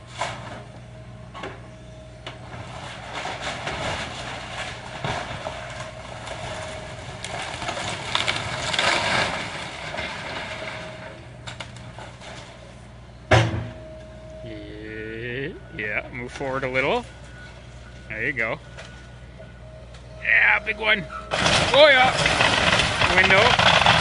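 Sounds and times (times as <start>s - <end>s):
heavy demolition machinery running: 0.0s - 24.0s
debris crunching and breaking: 2.6s - 12.6s, 21.3s - 24.0s
loud crash: 21.3s - 24.0s.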